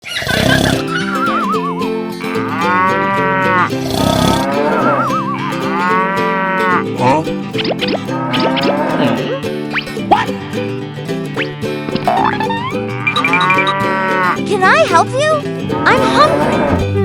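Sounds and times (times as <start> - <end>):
rising cartoon sound effects: 0.0 - 3.7, 4.3 - 10.4, 11.4 - 14.4
cheerful background music: 0.8 - 17.0
cow mooing: 2.2 - 6.8, 8.1 - 9.4, 13.0 - 14.4, 15.7 - 17.0.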